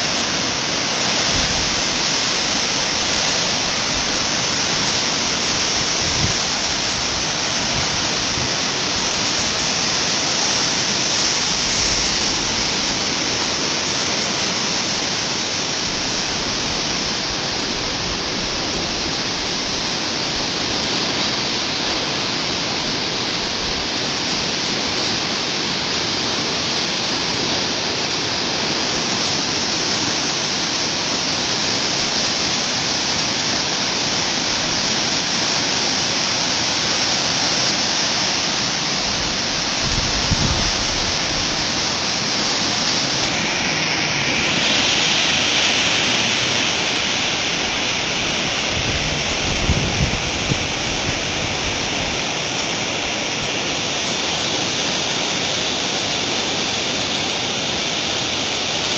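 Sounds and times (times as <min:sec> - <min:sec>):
floodwater rushing: 0:00.0 - 0:58.9.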